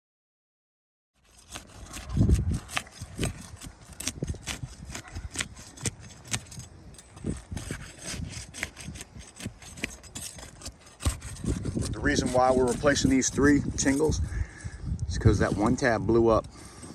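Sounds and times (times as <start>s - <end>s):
scraping on roof shingles: 1.2s - 14.2s.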